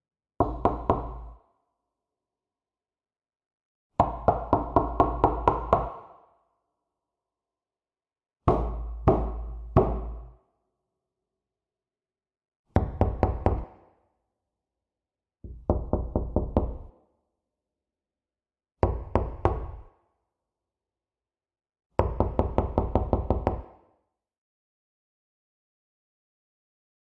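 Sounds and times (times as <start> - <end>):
knocking on a door: 8.5 - 10.3, 12.8 - 13.8, 15.4 - 16.9, 22.0 - 23.8.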